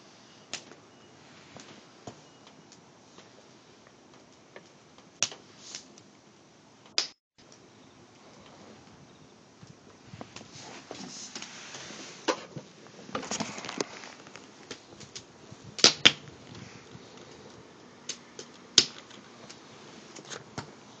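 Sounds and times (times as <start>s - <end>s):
wood fire crackling: 0.0s - 21.0s
sharp pops: 6.9s - 7.6s, 13.2s - 16.6s.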